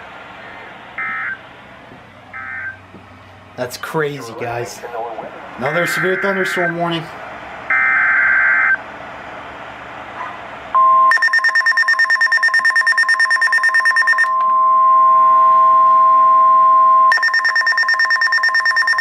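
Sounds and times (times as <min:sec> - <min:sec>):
steady warning alarm tone: 0:00.9 - 0:01.5, 0:02.3 - 0:02.9, 0:05.5 - 0:07.1, 0:07.7 - 0:08.8, 0:10.8 - 0:19.0
rapid pulsing alert beep: 0:05.7 - 0:06.9, 0:11.1 - 0:14.4, 0:17.1 - 0:19.0.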